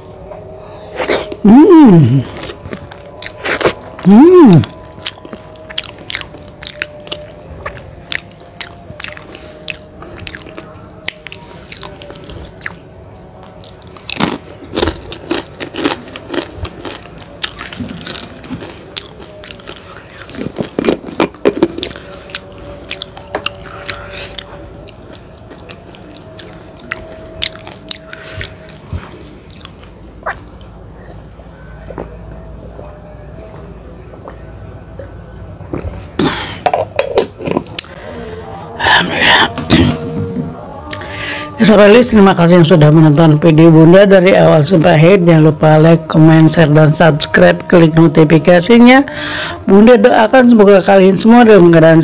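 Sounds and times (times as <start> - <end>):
person chewing noodles: 0.9 - 31.3, 39.4 - 41.6.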